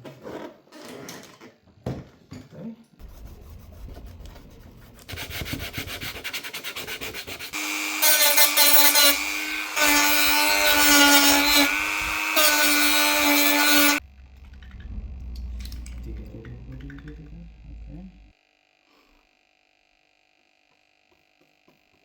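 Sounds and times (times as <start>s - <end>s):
electric sander whining: 7.5s - 14.1s.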